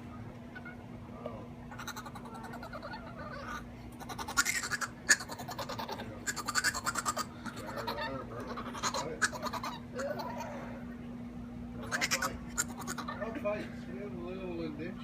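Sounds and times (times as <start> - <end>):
faint steady hum: 0.0 - 15.0
dog making raspy rattling noises: 1.8 - 10.4, 11.8 - 13.2.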